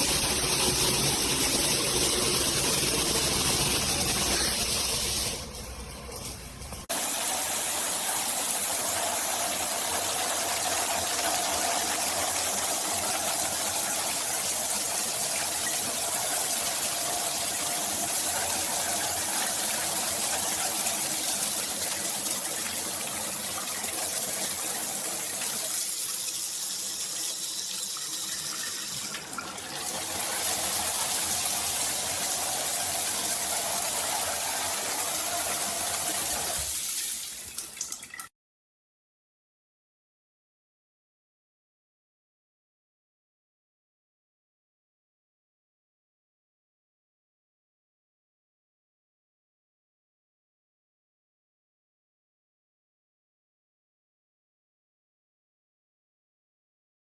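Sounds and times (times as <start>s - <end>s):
shower water spraying: 0.0s - 38.2s.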